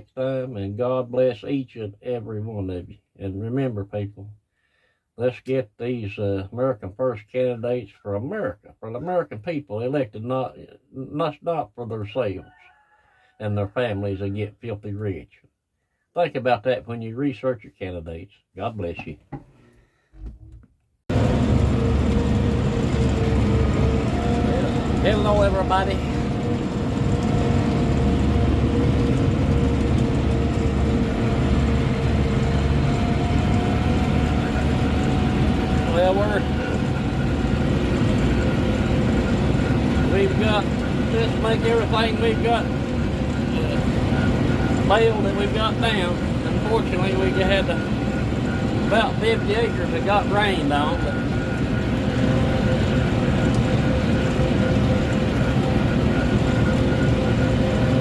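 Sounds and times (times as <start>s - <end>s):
faint steady whine: 21.1s - 58.0s
tractor engine running: 21.1s - 58.0s.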